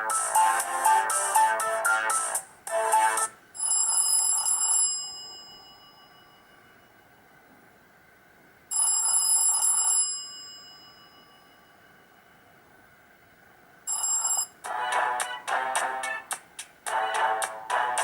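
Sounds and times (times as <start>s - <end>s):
melodic ringtone tune: 0.0s - 3.3s
old-style telephone ring: 3.6s - 6.8s, 8.7s - 12.2s, 13.9s - 14.6s.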